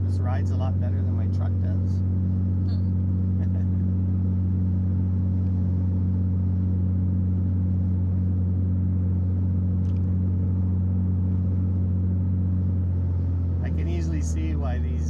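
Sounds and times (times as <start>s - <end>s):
road noise: 0.0s - 8.2s, 9.4s - 15.0s
car engine droning: 0.0s - 15.0s.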